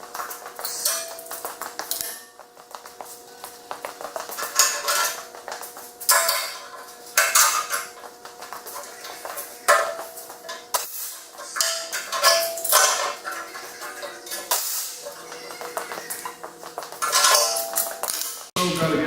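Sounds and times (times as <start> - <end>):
steel clanking and clattering: 4.2 - 18.5.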